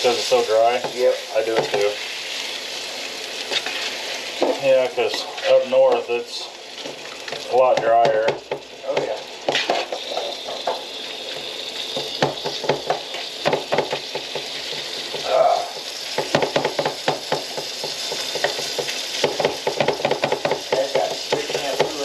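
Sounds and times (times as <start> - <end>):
food sizzling in a skillet: 0.0 - 22.0
utensil scraping a pan: 3.5 - 4.3, 9.5 - 10.7.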